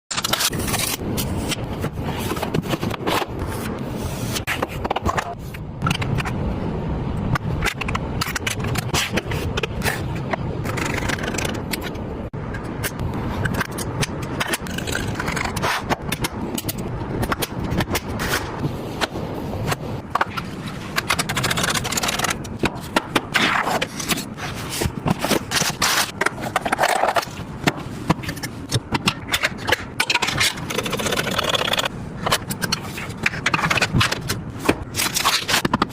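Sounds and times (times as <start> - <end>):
steady low hum: 0.1 - 35.9
clicks knocks and scrapes of hard parts: 7.3 - 35.9.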